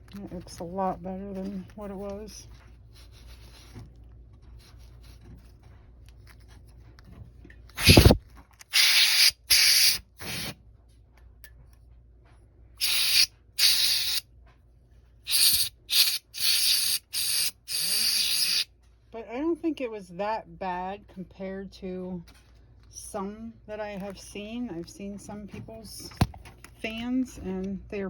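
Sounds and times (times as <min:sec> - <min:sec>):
hissing spray bursts: 0:07.8 - 0:10.6, 0:12.8 - 0:14.2, 0:15.3 - 0:18.7.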